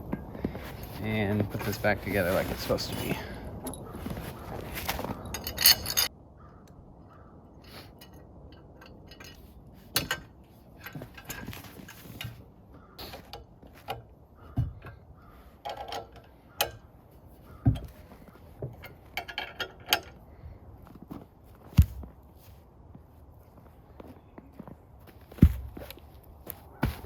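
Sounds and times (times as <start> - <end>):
metal parts clicking and clanking: 0.9 - 6.1, 7.6 - 17.0, 17.6 - 20.3.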